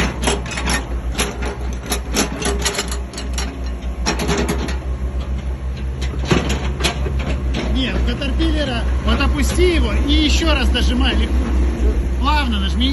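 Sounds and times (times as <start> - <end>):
machine clanks and knocks: 0.0 - 8.2
diesel engine low rumble: 0.0 - 12.9.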